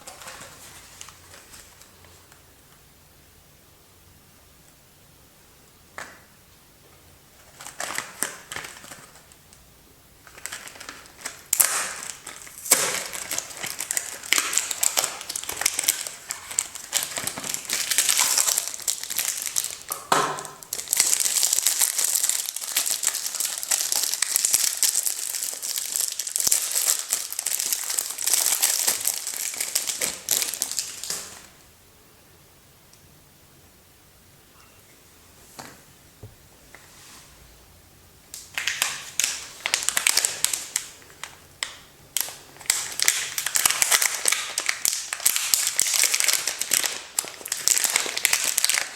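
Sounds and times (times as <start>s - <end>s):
wrapper crinkling: 0.0s - 1.9s, 7.4s - 9.4s, 10.2s - 31.5s, 38.3s - 48.9s.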